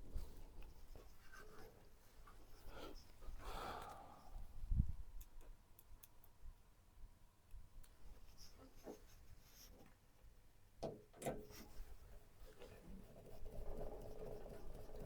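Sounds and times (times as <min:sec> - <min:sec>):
rustling and scraping of parts: 0:00.0 - 0:03.2, 0:08.2 - 0:10.0, 0:11.2 - 0:15.0.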